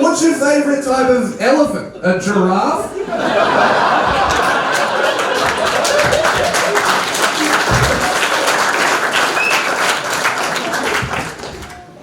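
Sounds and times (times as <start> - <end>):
audience laughter: 2.8 - 9.5
audience applauding and cheering: 3.5 - 12.0.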